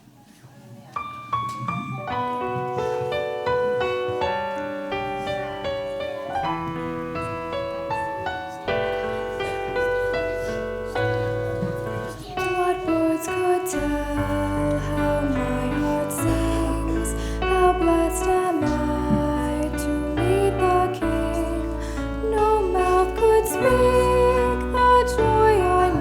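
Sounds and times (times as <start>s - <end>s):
slow piano chords: 0.0s - 26.0s
low bass: 13.8s - 26.0s.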